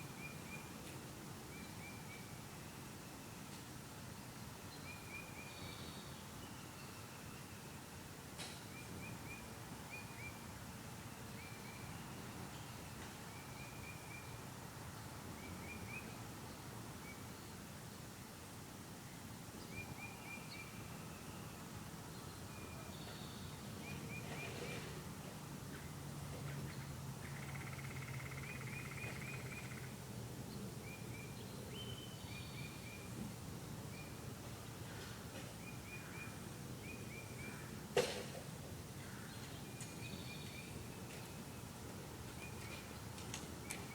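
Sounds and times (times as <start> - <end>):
songbirds chirping and trilling: 19.6 - 38.0, 38.7 - 43.9.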